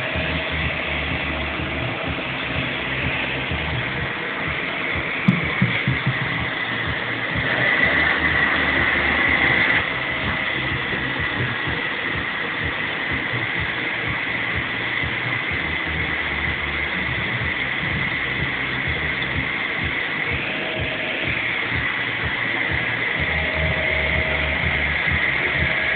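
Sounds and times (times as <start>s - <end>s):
low bumps: 0.0s - 11.9s
vacuum cleaner running: 0.0s - 25.9s.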